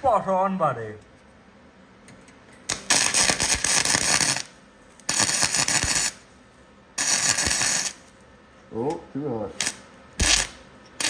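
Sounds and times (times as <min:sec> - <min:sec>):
welder crackling: 0:02.7 - 0:06.3, 0:07.0 - 0:08.1, 0:09.6 - 0:11.0.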